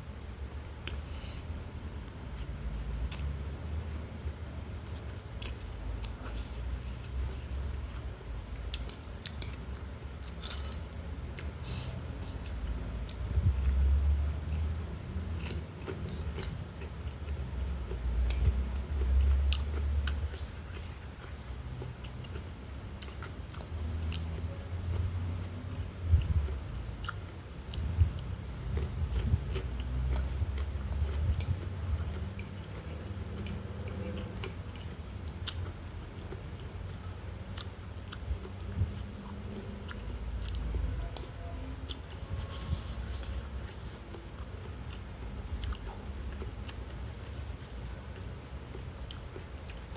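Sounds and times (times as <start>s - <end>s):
chewing and biting food: 12.2s - 41.0s, 41.7s - 49.9s.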